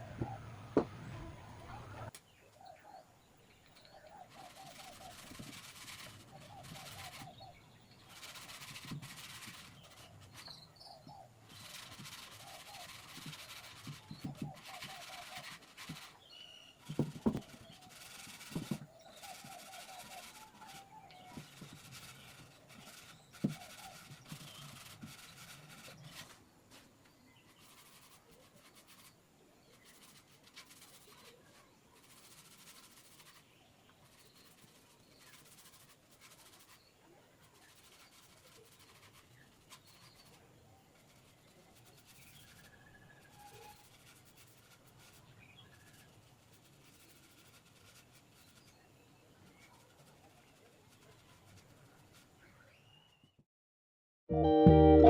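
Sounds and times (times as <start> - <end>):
soft knocks: 0.0 - 2.1.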